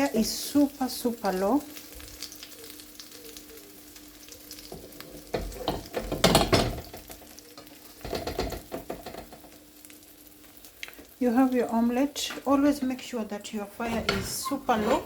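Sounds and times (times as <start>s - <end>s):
omelette sizzling in a pan: 0.0s - 15.0s
utensil scraping against pan: 13.8s - 15.0s.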